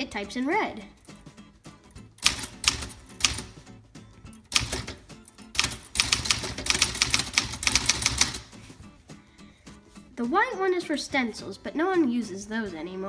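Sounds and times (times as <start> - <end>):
manual typewriter keystrokes: 2.2 - 3.6, 4.5 - 8.6.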